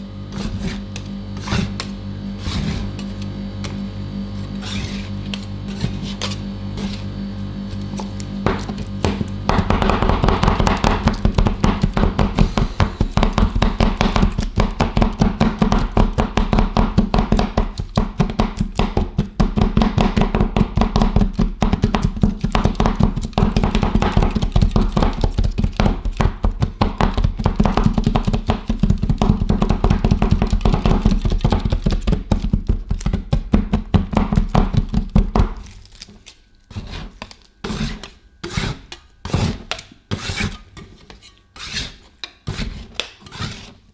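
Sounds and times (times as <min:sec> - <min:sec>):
metal spatulas chopping on steel: 0:08.5 - 0:31.9.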